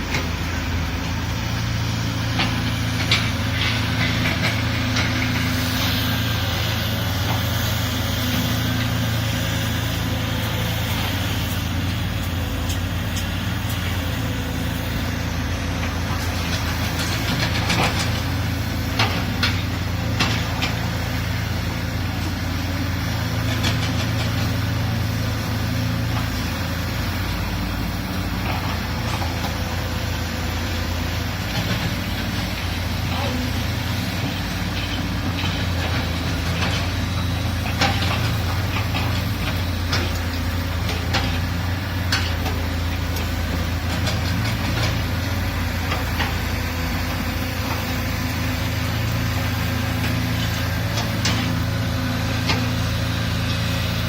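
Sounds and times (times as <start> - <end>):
excavator diesel engine running: 0.0 - 54.0.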